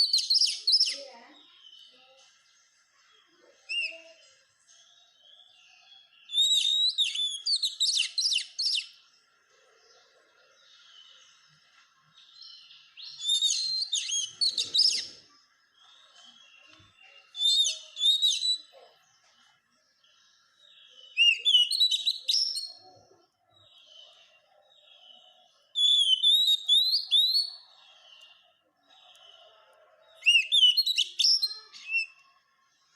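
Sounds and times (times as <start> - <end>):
bird singing whistles: 0.0 - 1.0, 3.7 - 4.0, 6.2 - 8.9, 13.0 - 15.2, 17.3 - 18.7, 21.0 - 22.8, 25.7 - 27.6, 30.2 - 32.2
soft bird twittering: 0.0 - 32.9.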